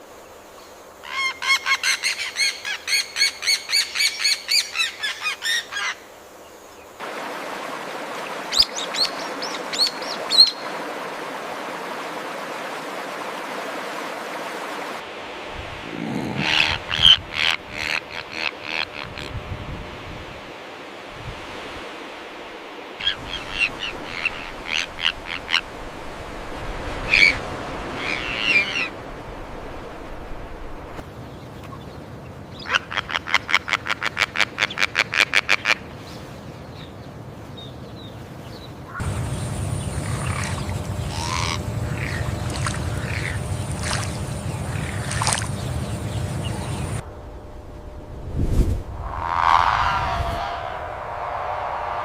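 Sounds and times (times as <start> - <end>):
birds chirping and squawking: 16.0 - 19.4, 38.9 - 47.0
steady low background noise: 38.7 - 49.8.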